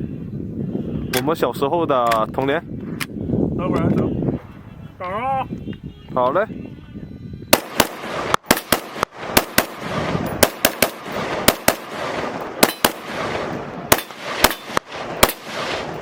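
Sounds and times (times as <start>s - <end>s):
rifle shots with echo: 7.5s - 16.0s.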